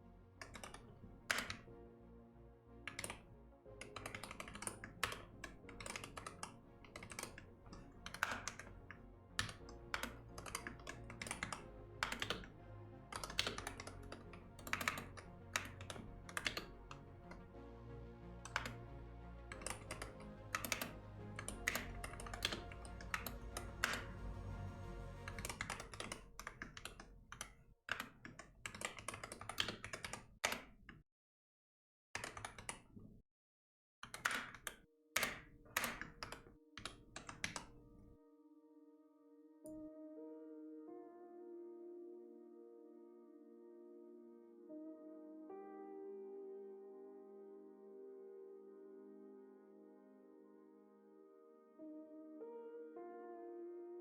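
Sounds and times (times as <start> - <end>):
soft background music: 0.0 - 27.2, 34.2 - 54.0
typing on computer keyboard: 0.4 - 1.7, 2.9 - 3.2, 3.8 - 12.5, 13.1 - 17.4, 18.4 - 18.9, 19.5 - 24.2, 25.3 - 30.7, 32.2 - 32.9, 34.0 - 37.8.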